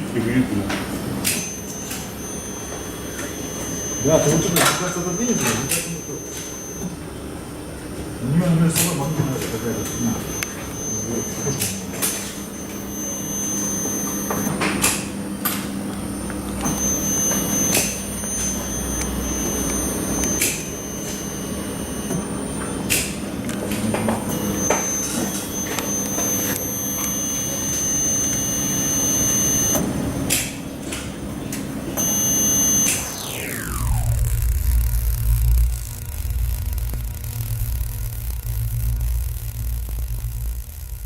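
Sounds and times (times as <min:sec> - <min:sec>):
high-pitched equipment whine: 0:00.0 - 0:41.0
low electrical hum: 0:31.4 - 0:41.0
falling whoosh: 0:32.8 - 0:41.0.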